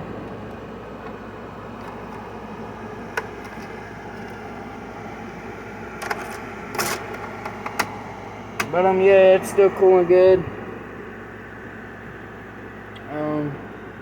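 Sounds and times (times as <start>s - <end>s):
air conditioner running: 0.0s - 14.0s.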